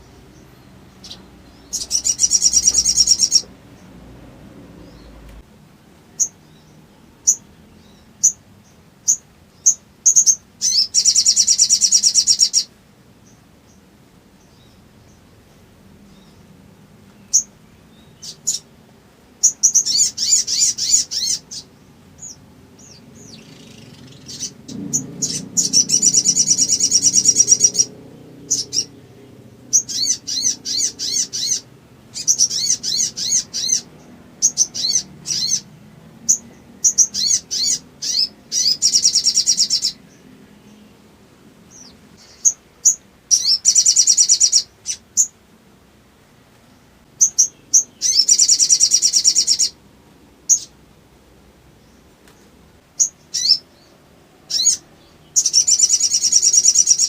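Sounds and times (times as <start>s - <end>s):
bird rapid chattering calls: 0.1s - 3.5s, 19.4s - 29.0s, 29.7s - 35.7s, 36.3s - 40.0s, 47.2s - 49.8s, 54.5s - 54.8s, 55.4s - 57.0s.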